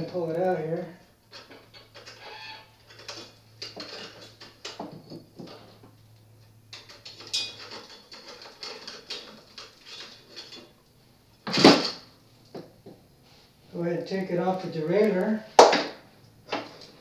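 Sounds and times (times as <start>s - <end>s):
short squeak: 2.1s - 2.8s.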